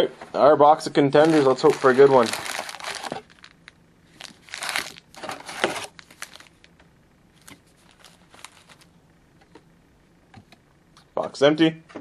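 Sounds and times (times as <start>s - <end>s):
card packs rustling and clicking: 1.0s - 6.7s, 7.4s - 8.9s
plastic wrapping tearing and crinkling: 1.1s - 6.7s, 7.4s - 8.9s.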